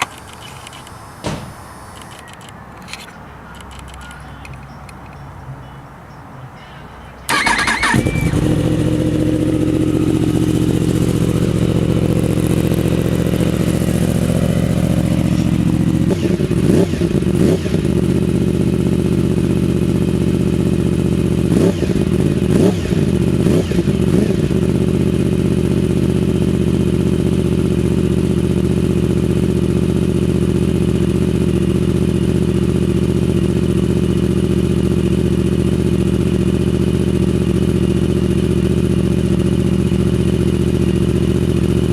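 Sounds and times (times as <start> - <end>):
motorcycle throttle blips: 7.3 - 29.0
motorcycle engine idling: 7.3 - 41.9.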